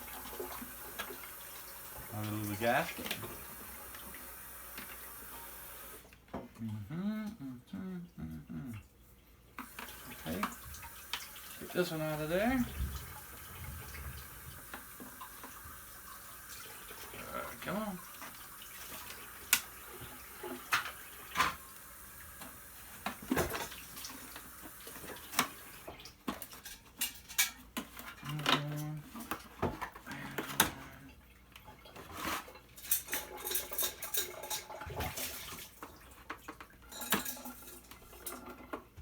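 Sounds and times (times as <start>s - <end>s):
short low hums: 6.6s - 8.8s.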